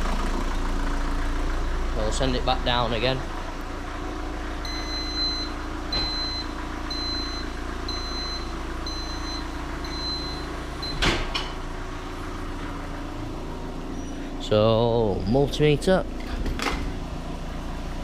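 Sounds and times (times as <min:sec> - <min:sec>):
diesel engine idling: 0:00.0 - 0:18.0
vehicle lift warning beeps: 0:04.6 - 0:11.2.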